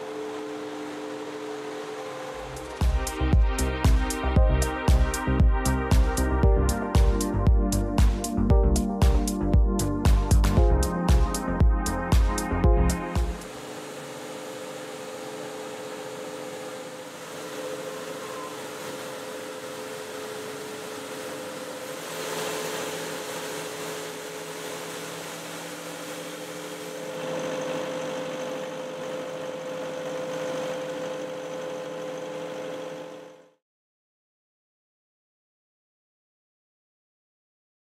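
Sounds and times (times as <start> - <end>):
street sweeper running: 13.3 - 33.4.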